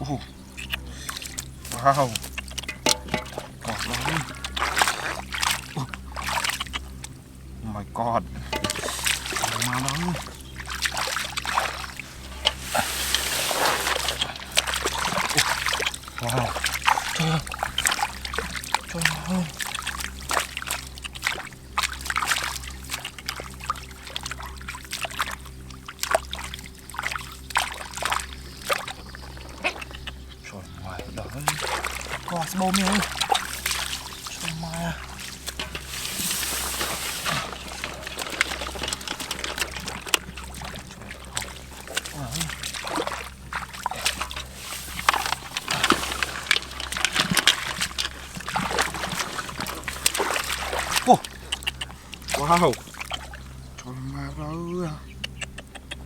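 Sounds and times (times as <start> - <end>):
shallow water splashing: 0.0 - 56.0
steady low hum: 0.0 - 56.0.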